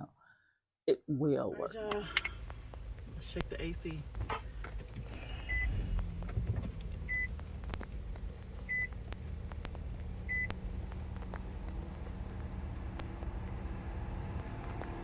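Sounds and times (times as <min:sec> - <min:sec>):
steady low hum: 0:01.6 - 0:15.0
car warning chime beeping: 0:05.4 - 0:05.8, 0:07.0 - 0:07.4, 0:08.7 - 0:09.0, 0:10.2 - 0:10.6.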